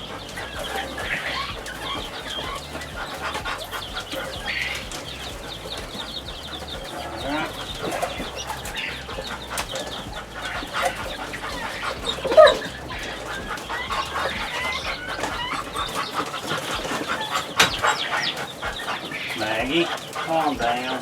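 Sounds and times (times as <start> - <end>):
chicks peeping: 0.0 - 21.0
louder lower bird call: 0.0 - 21.0.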